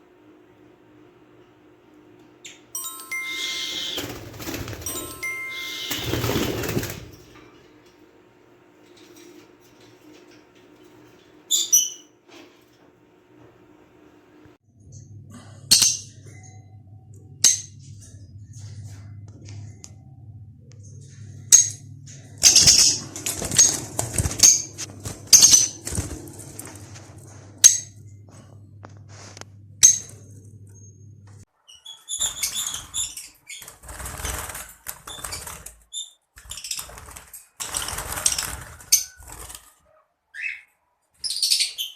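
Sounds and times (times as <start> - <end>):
parrots squawking: 3.2 - 4.3, 5.4 - 6.6
steady low hum: 4.0 - 31.5
rustling: 22.8 - 29.4.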